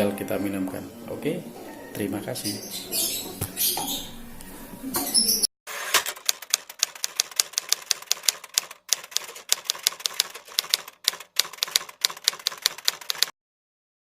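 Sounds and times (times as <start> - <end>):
rapid clicking like typing: 6.0 - 13.3.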